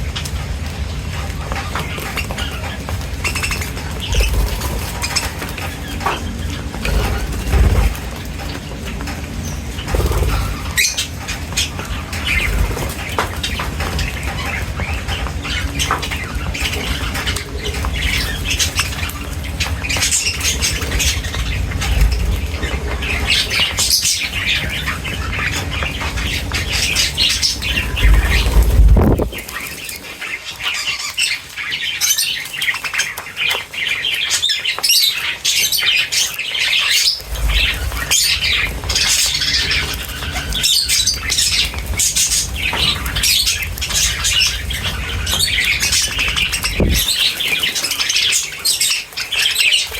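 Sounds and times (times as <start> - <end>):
small birds chirping: 0.0 - 49.9
low rumble: 14.8 - 29.6, 45.6 - 47.2.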